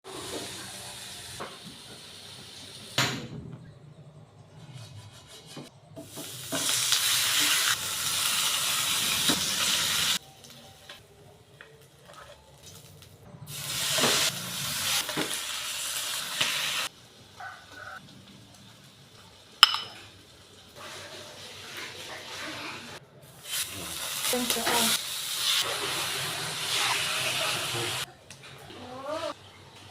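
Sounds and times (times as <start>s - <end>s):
food sizzling in a pan: 0.1s - 3.0s, 6.0s - 11.0s, 12.0s - 28.1s
stirring and utensil noises: 10.4s - 13.0s.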